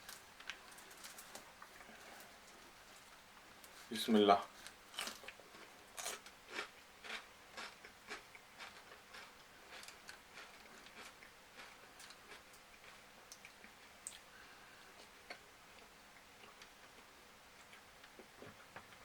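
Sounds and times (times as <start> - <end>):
person chewing food: 4.9 - 14.3.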